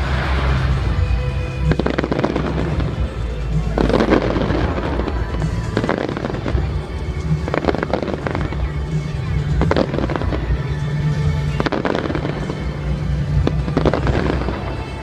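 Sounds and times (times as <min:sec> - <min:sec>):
background music: 0:00.0 - 0:15.0
fireworks bursting and crackling: 0:00.0 - 0:15.0.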